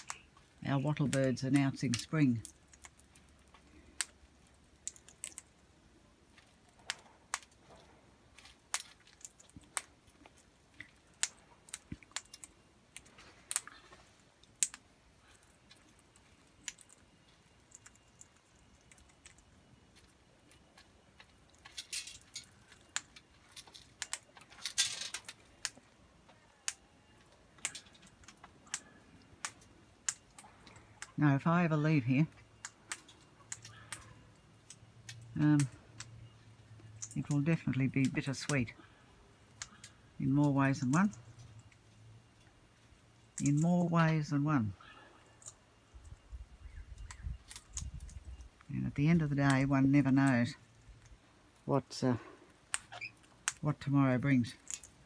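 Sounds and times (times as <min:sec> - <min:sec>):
parrots cracking seed: 0:00.0 - 0:05.6, 0:06.3 - 0:31.2, 0:52.4 - 0:53.7, 0:54.5 - 0:55.0.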